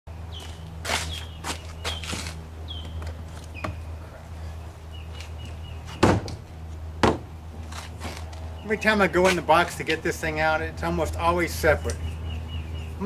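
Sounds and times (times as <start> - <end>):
steady low hum: 0.1 - 13.0
sharp knocks: 5.9 - 6.4, 7.0 - 7.3.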